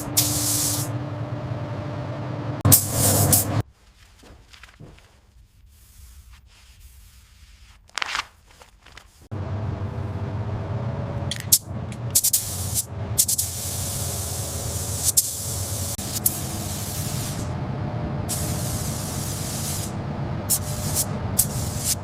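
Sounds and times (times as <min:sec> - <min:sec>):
spraying hiss: 0:00.0 - 0:00.9, 0:12.1 - 0:17.5, 0:18.3 - 0:19.9, 0:20.5 - 0:22.0
steady machine hum: 0:00.0 - 0:03.6, 0:09.3 - 0:22.0.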